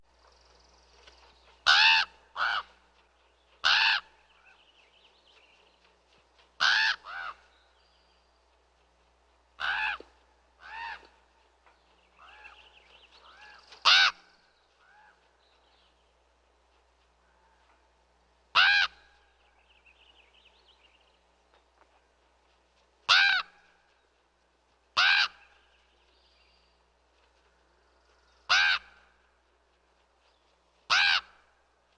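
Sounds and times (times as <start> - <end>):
ravens croaking caws: 9.6 - 11.1, 28.5 - 29.1, 30.9 - 31.4
faint bird calls: 9.6 - 16.2.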